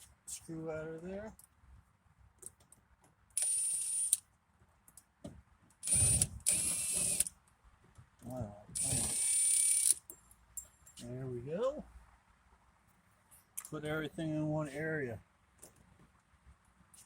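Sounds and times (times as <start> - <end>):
power screwdriver whining: 3.4 - 4.2, 5.8 - 7.3, 8.8 - 10.0.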